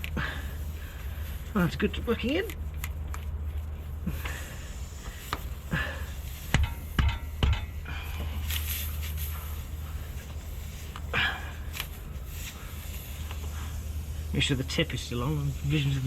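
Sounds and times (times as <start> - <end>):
steady low hum: 0.0 - 16.0
sharp knocks: 6.5 - 7.8.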